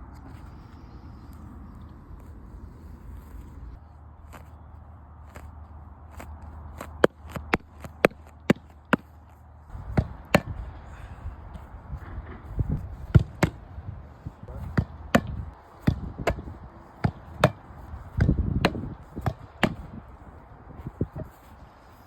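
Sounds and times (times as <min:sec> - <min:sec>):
low thuds: 0:11.8 - 0:20.1
sharp taps and knocks: 0:18.2 - 0:19.8.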